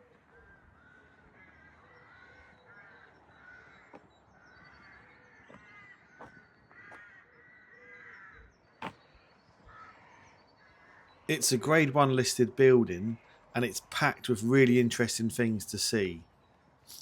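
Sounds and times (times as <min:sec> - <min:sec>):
crows cawing: 0:00.3 - 0:08.6, 0:09.2 - 0:11.3.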